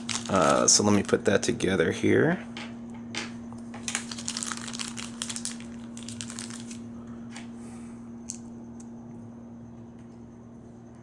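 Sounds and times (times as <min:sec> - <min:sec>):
plastic bag crinkling: 0:00.0 - 0:01.4, 0:03.8 - 0:06.9.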